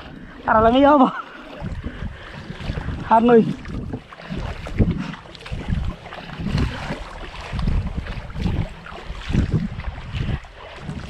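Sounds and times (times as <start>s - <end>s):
sea water washing: 0.0s - 11.0s
wind buffeting microphone: 0.0s - 11.0s.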